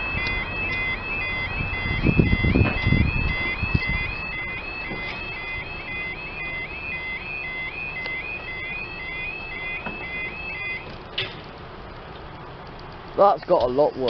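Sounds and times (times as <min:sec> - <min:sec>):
level crossing alarm warbling: 0:00.0 - 0:10.9.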